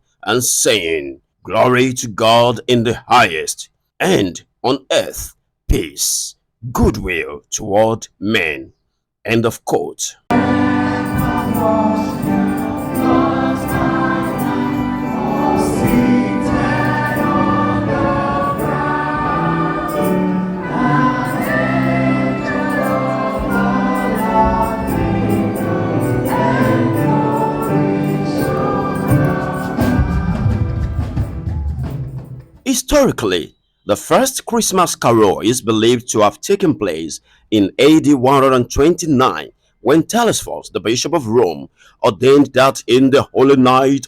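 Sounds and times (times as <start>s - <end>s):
choir singing in harmony: 10.3s - 32.1s
low instrumental notes: 10.3s - 32.3s.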